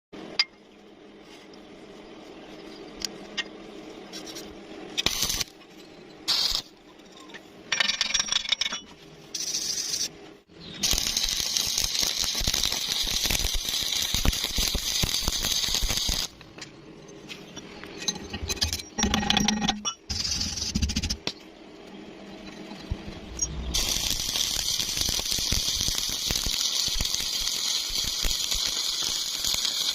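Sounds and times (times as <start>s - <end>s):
welding arc crackling and hissing: 5.0s - 5.5s, 6.3s - 6.7s, 10.8s - 16.5s, 23.0s - 29.9s.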